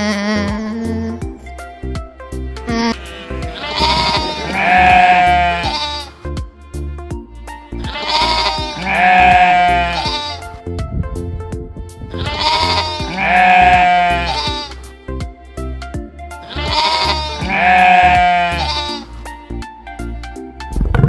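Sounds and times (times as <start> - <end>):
music with low beat: 0.0 - 21.0
goat bleating: 2.6 - 6.2, 7.8 - 10.6, 12.1 - 14.8, 16.4 - 19.1.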